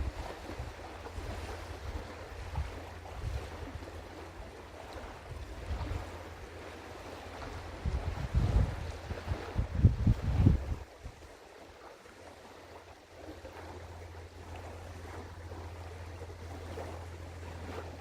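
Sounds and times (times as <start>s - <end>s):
wind buffeting microphone: 0.0s - 11.4s.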